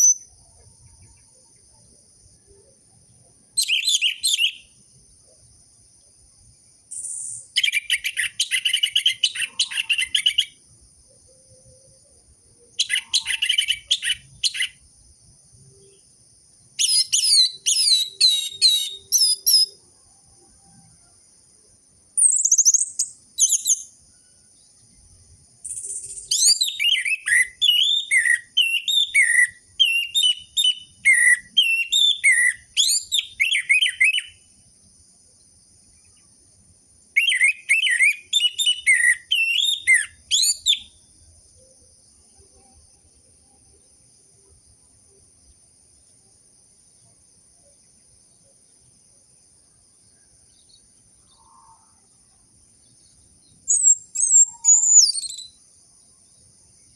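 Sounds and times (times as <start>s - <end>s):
thrush singing whistled phrases: 0.0s - 0.4s, 3.6s - 4.8s, 6.9s - 10.6s, 12.8s - 14.8s, 16.8s - 19.8s, 22.2s - 24.0s, 25.6s - 34.4s, 37.2s - 41.0s, 53.7s - 55.6s
faint high-pitched whine: 0.0s - 56.9s.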